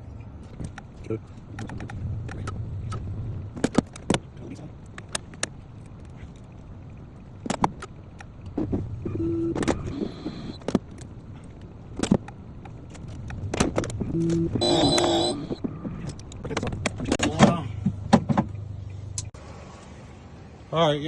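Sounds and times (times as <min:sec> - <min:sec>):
keys and tools clicking and knocking: 0:00.4 - 0:08.6, 0:10.5 - 0:18.6
short electronic beep: 0:14.2 - 0:15.6.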